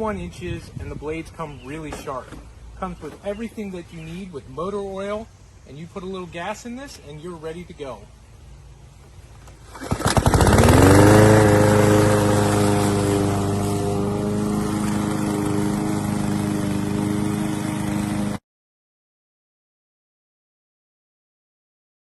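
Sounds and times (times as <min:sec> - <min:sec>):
lawn mower engine starting: 0:09.4 - 0:18.4.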